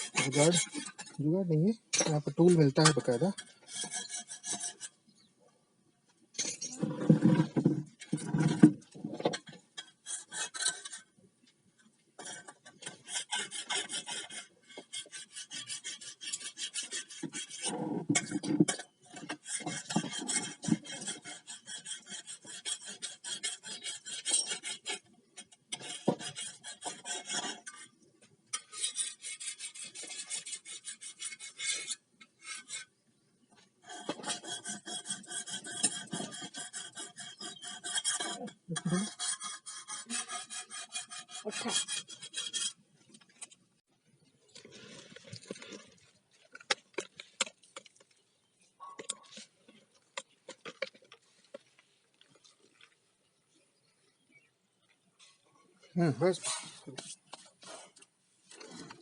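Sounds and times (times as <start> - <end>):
metal file rasping on blade: 0.0 - 1.2, 2.0 - 5.0, 9.8 - 11.0, 12.2 - 27.9, 28.5 - 32.9, 33.8 - 42.8.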